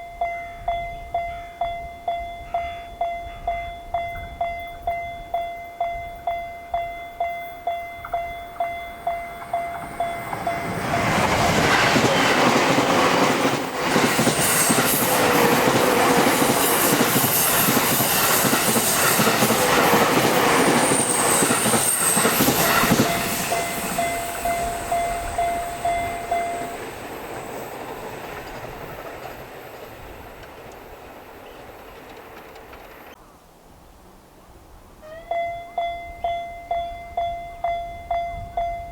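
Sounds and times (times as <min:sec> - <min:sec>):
level-crossing alarm bell: 0:00.0 - 0:28.0
electric train passing: 0:00.0 - 0:33.2.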